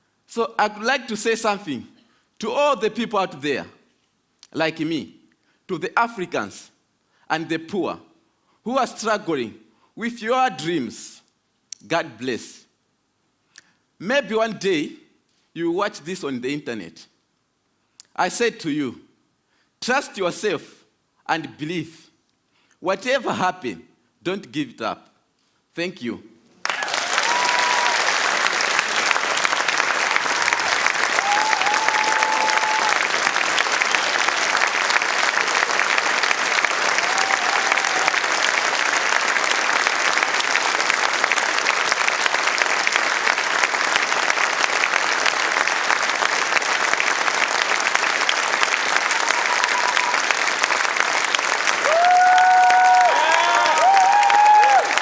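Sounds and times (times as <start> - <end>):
audience applauding: 26.6 - 55.0
crowd calling out: 30.5 - 33.1.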